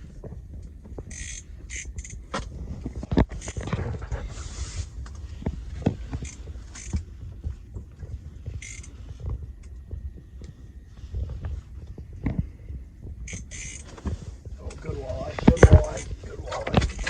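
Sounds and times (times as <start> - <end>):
wind buffeting microphone: 0.0 - 17.0
scattered knocks: 12.0 - 17.0.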